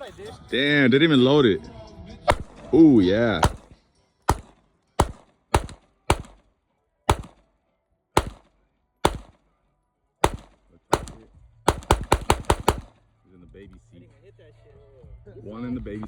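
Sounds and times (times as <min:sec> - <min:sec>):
gunshots with echo: 0:02.3 - 0:06.4, 0:07.1 - 0:07.4, 0:08.2 - 0:09.4, 0:10.2 - 0:13.0.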